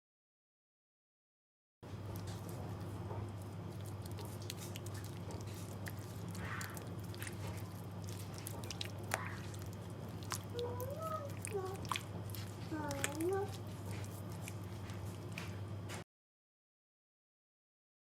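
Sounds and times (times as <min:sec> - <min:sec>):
steady low hum: 0:01.8 - 0:16.0
wet squishing of raw meat: 0:01.9 - 0:15.7.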